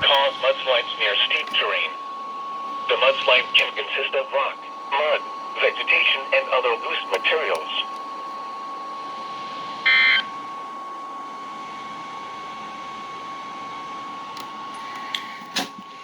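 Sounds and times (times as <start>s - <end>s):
faint high whine: 0.0s - 10.6s.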